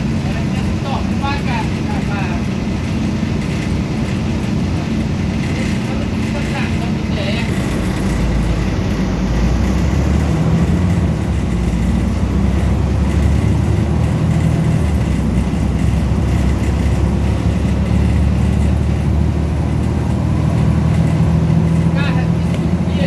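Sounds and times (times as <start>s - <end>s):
bus engine droning: 0.0s - 23.0s.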